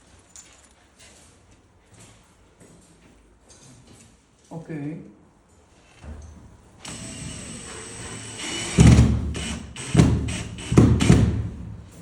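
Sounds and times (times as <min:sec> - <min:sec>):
cordless drill whining: 0:06.8 - 0:11.2.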